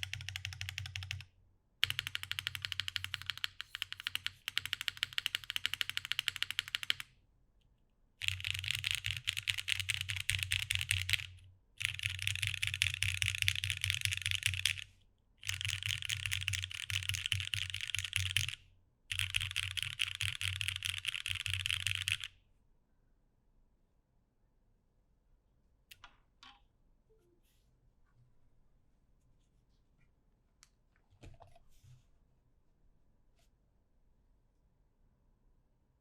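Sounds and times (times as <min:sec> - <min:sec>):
mechanical keyboard typing: 0:00.0 - 0:07.1, 0:08.2 - 0:22.3.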